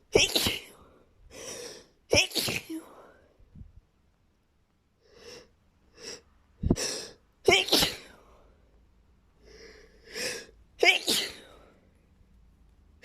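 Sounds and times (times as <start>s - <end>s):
person sneezing: 0.0s - 0.8s, 1.4s - 3.0s, 6.1s - 8.2s, 10.1s - 11.6s
gasping breaths: 0.7s - 2.0s.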